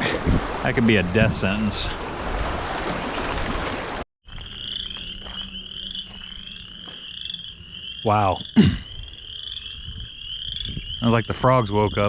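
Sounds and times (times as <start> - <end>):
wind noise: 0.0 - 3.8, 8.7 - 12.0
rushing water: 0.0 - 4.0
frogs trilling: 4.3 - 12.0.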